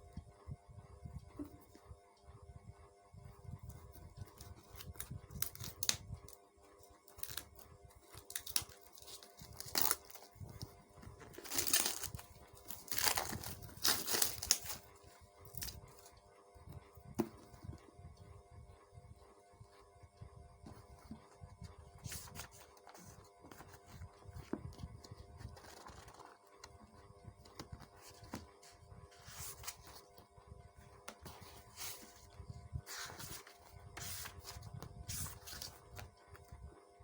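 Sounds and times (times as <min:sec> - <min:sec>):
packaging tearing and rustling: 0:08.2 - 0:10.3, 0:11.2 - 0:14.8.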